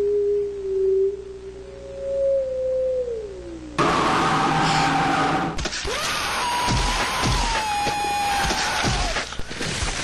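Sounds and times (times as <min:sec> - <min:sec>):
tone falling in pitch: 0:00.0 - 0:03.8.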